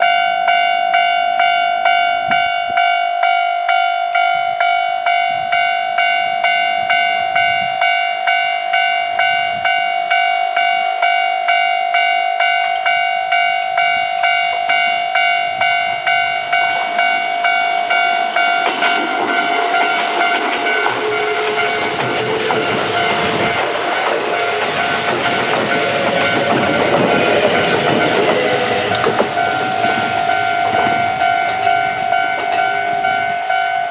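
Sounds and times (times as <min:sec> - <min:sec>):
level-crossing warning bell ringing: 0:00.0 - 0:33.9
train wheels rumbling over rails: 0:13.8 - 0:33.9.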